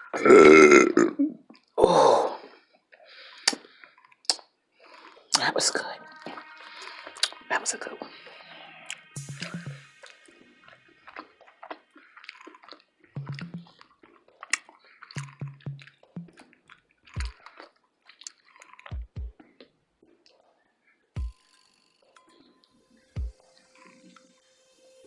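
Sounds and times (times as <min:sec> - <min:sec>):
mouth chewing wetly: 0:02.6 - 0:20.7
low thumps: 0:13.2 - 0:13.8, 0:15.2 - 0:16.4.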